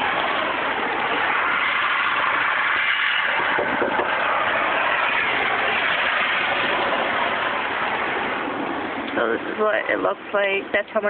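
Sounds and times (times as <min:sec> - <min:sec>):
blizzard wind rushing: 0:00.0 - 0:11.0.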